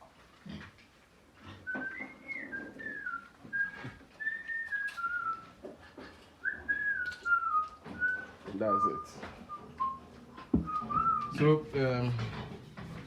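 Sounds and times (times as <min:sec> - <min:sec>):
person whistling a tune: 0:01.7 - 0:05.5, 0:06.4 - 0:10.0, 0:10.6 - 0:11.4
knocks and clunks: 0:09.2 - 0:13.0.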